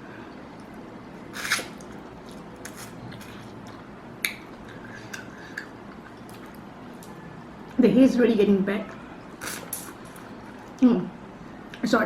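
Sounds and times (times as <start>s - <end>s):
person biting and chewing: 1.3s - 3.8s.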